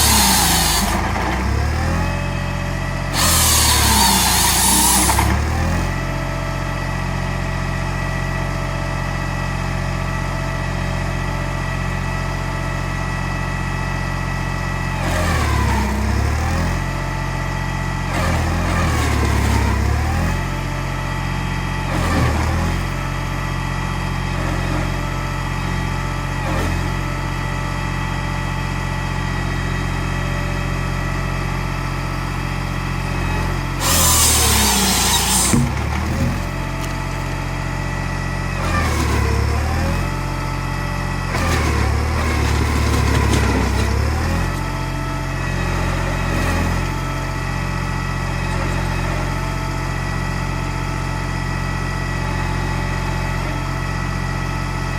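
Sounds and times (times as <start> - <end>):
tractor diesel engine running: 0.0 - 54.9.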